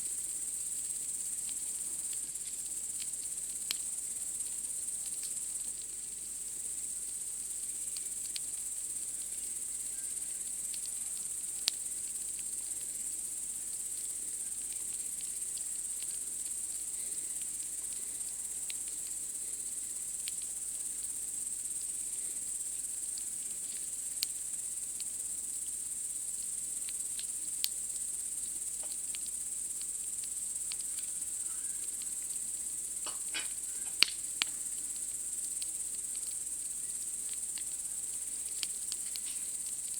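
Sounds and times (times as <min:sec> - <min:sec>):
campfire wood crackling: 0:00.0 - 0:39.9
night insects chirring: 0:00.0 - 0:39.9.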